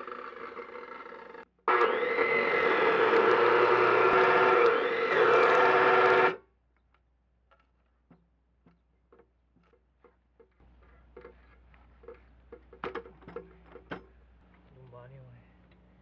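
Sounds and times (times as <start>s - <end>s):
angle grinder whining: 0.0s - 6.4s.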